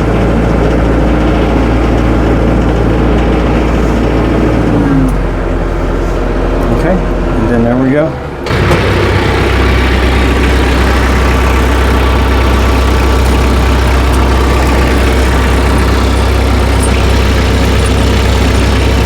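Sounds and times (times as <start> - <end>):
tractor engine running: 0.0 - 19.0.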